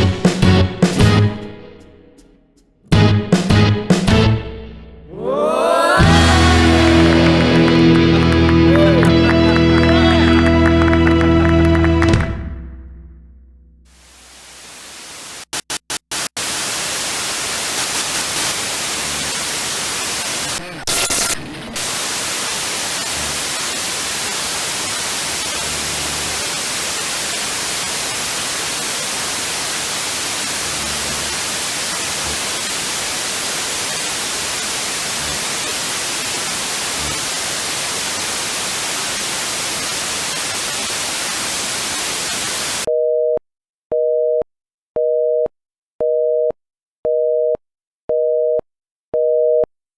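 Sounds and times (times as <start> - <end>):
static hiss: 13.9 - 42.9.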